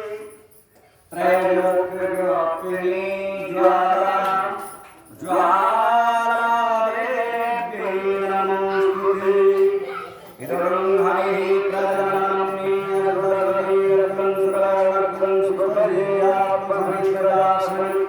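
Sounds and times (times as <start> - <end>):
voices chanting a hymn: 0.0 - 0.4, 1.1 - 18.0.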